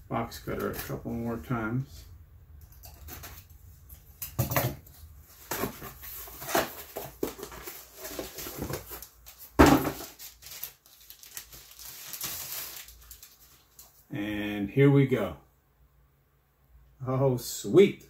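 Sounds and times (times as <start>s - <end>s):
package rustling: 5.4s - 14.1s.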